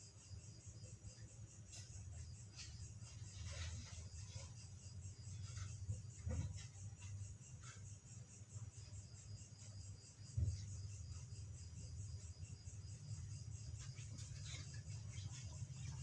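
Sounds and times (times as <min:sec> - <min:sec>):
crickets chirping: 0:00.0 - 0:16.0
soft thump: 0:10.2 - 0:10.9.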